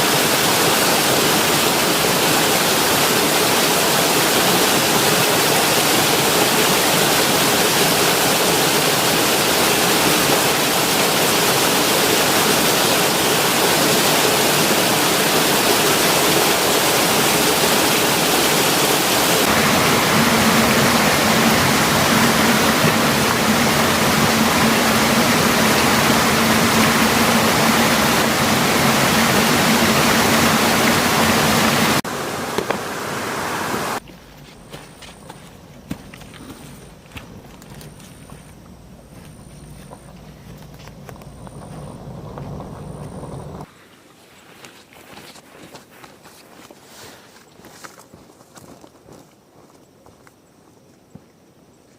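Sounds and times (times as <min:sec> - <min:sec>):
river water rushing: 0:00.0 - 0:34.0.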